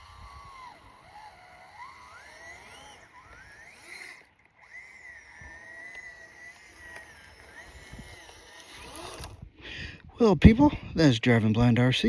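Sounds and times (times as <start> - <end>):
electric motor whining: 0.0 - 9.6.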